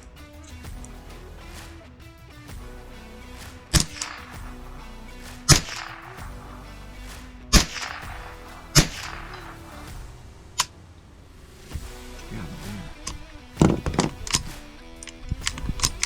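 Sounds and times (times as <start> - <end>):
background music: 0.0 - 16.0
gunshots: 2.6 - 10.8.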